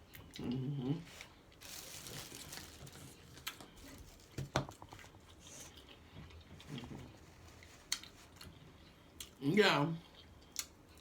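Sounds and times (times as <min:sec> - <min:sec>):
person chewing food: 0:03.2 - 0:09.4.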